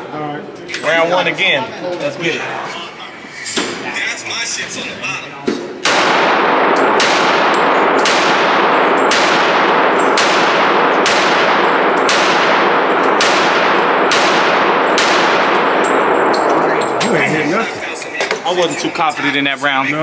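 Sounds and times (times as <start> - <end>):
pistol shots echoing indoors: 5.8 - 17.0.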